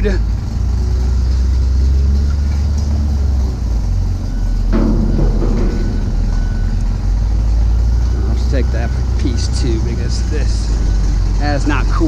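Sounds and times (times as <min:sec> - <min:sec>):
vehicle engine idling: 0:00.0 - 0:12.0
short clattering: 0:04.7 - 0:08.2.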